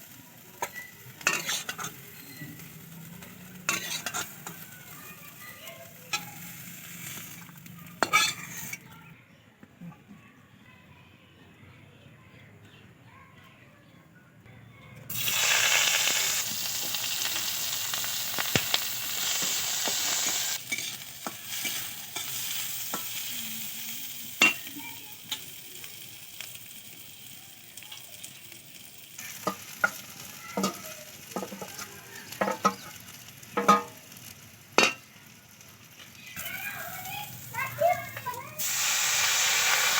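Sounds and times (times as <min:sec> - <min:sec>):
food sizzling in hot oil: 0:00.0 - 0:09.0, 0:15.1 - 0:39.9
spatula scraping pan: 0:00.6 - 0:08.9, 0:29.2 - 0:33.0.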